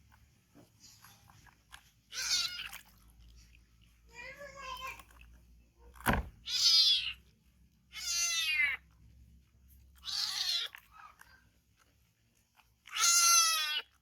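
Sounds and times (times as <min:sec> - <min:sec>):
kitten meowing: 0:06.4 - 0:07.2, 0:07.9 - 0:08.8, 0:10.0 - 0:10.8, 0:12.9 - 0:13.9.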